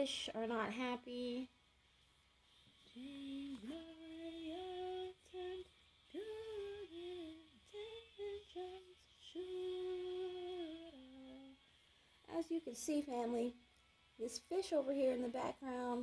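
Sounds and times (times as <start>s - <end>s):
woman humming: 2.9s - 11.6s.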